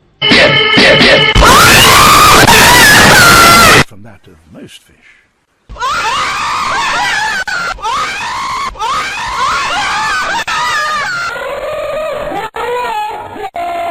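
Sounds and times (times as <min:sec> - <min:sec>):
high-pitched screaming voice: 0:00.3 - 0:03.8.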